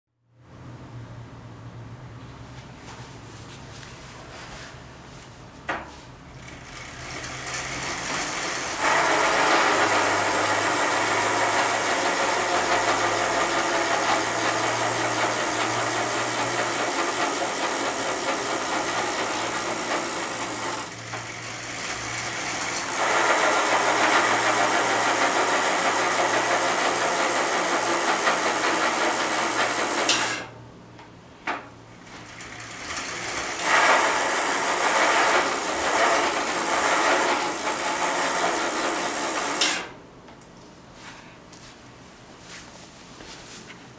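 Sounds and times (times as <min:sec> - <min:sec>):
bicycle hub noise: 0:06.3 - 0:30.5, 0:31.9 - 0:39.9.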